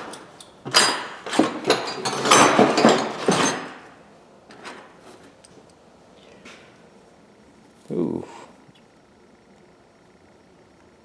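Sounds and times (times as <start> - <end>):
metal tools clattering and clinking: 0.0 - 4.9.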